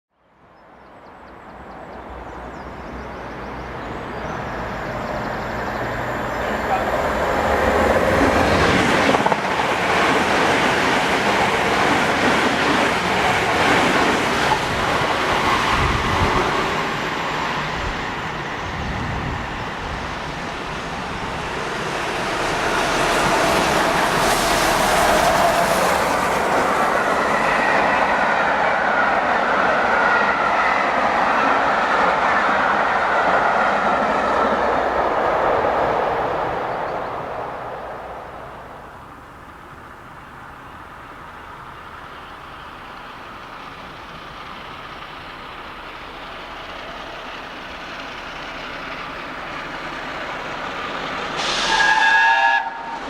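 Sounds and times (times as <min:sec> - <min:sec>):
steam train passing: 0:01.3 - 0:53.0
clickety-clack of train wheels: 0:07.5 - 0:18.2.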